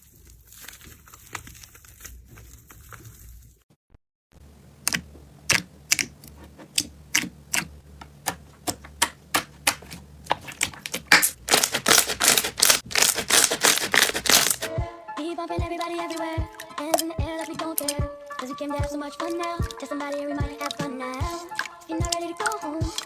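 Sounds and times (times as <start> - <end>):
slime clicking and popping: 4.8 - 6.1, 16.1 - 18.1, 18.8 - 23.0.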